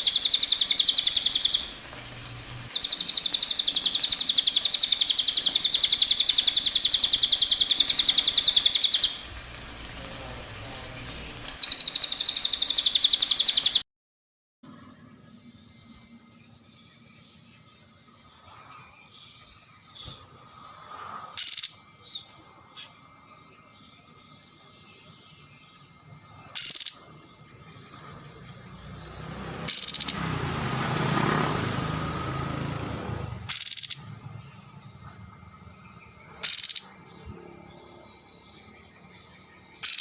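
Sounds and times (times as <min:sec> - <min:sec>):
songbird buzzy trill: 0:00.0 - 0:01.8, 0:02.7 - 0:09.4, 0:11.6 - 0:13.8, 0:21.3 - 0:31.3, 0:33.4 - 0:40.0
insects droning: 0:00.0 - 0:13.8, 0:14.7 - 0:40.0
rushing noise: 0:27.8 - 0:34.4.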